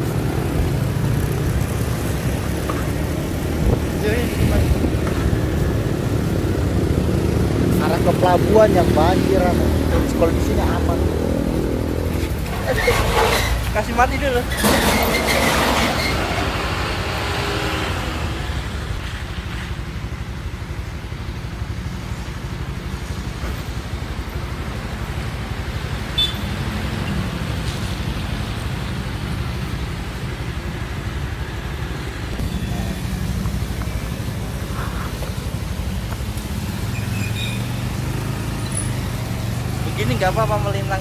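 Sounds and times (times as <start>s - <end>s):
vehicle rumble on the road: 0.0s - 41.0s.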